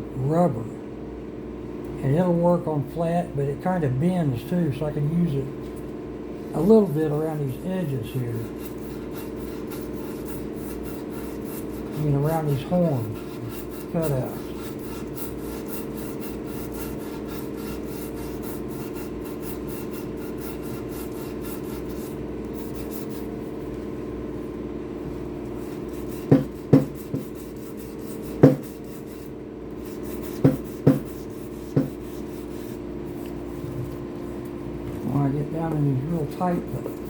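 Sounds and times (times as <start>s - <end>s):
steady low hum: 0.0s - 37.0s
sanding block rasping: 8.4s - 23.3s, 25.6s - 32.8s
sharp knocks: 26.3s - 27.3s, 28.4s - 28.7s, 30.4s - 31.1s, 31.7s - 32.0s.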